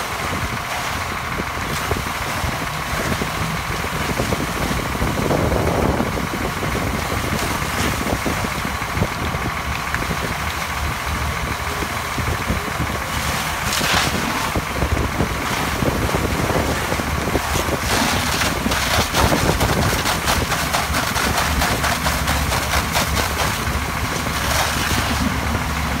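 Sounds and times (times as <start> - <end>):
fire engine pump droning: 0.0 - 26.0
clicks and crackles: 17.5 - 25.5.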